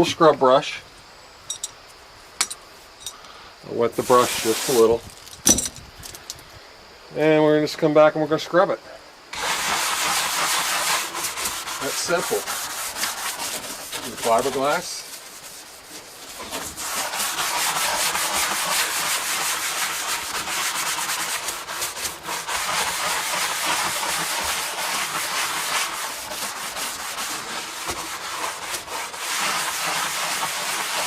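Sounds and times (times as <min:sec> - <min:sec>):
brush scrubbing wet fiberglass: 0:03.9 - 0:05.2, 0:09.4 - 0:31.0.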